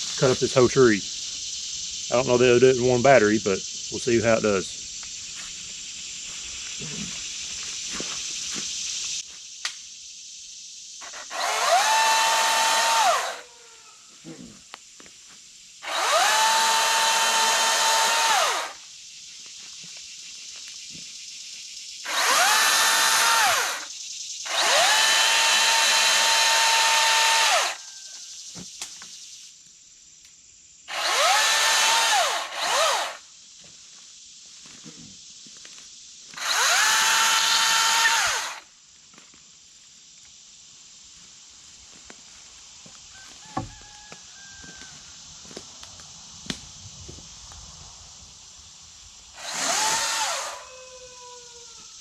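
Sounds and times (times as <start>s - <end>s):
cordless chainsaw cutting wood: 11.0s - 13.6s, 15.8s - 18.8s, 22.0s - 27.8s, 30.9s - 33.2s, 36.4s - 38.6s, 49.4s - 50.7s.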